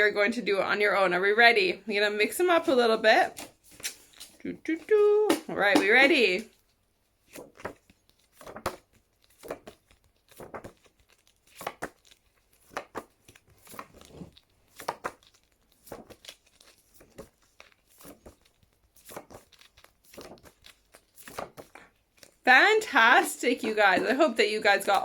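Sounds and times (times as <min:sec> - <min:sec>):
paper cards flicking: 0:07.3 - 0:14.1, 0:14.7 - 0:22.4.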